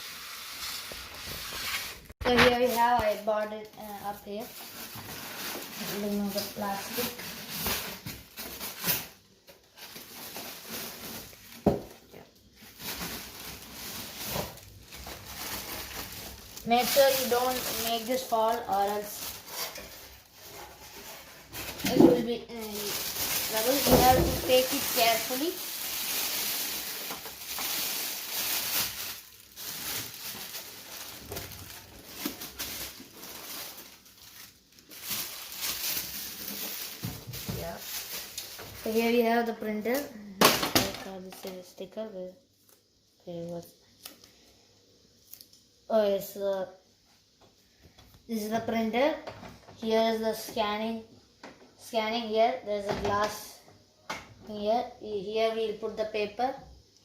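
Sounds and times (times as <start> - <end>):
plastic packaging crinkling: 0.8 - 11.9, 12.5 - 40.0.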